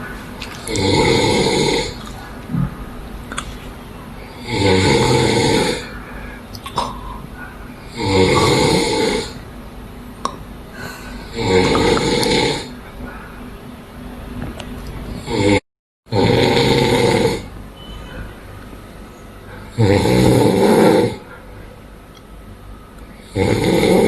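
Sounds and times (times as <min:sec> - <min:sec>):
man snoring loudly: 0:00.6 - 0:02.0, 0:04.3 - 0:06.0, 0:07.9 - 0:09.4, 0:11.2 - 0:12.8, 0:15.2 - 0:17.5, 0:19.6 - 0:21.3, 0:23.2 - 0:24.0
quiet breathing: 0:05.7 - 0:07.9, 0:10.7 - 0:13.6, 0:19.2 - 0:19.8, 0:21.2 - 0:21.9.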